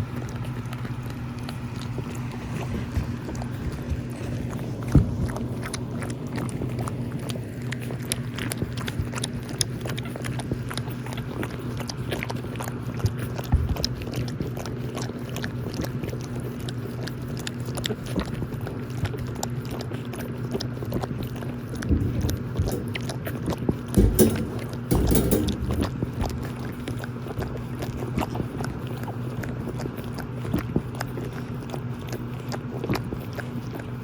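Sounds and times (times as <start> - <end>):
puppies clicking and chewing: 0.0 - 34.0
steady low hum: 21.8 - 28.0
loud knock: 24.0 - 26.0.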